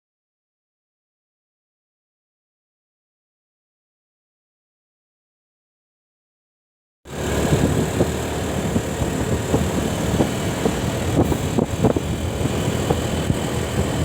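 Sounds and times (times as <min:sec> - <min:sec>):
bus engine running: 0:07.1 - 0:14.0.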